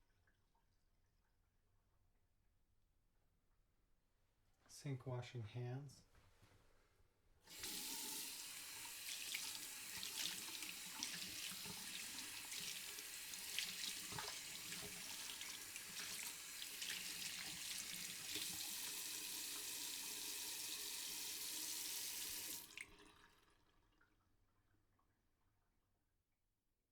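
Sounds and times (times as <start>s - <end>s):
hands washing under water: 7.5s - 19.8s
tap water running into sink: 7.5s - 23.6s.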